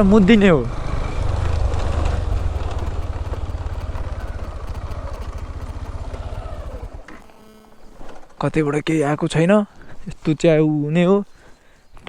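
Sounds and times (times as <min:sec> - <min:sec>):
motorcycle engine running: 0:00.0 - 0:08.4.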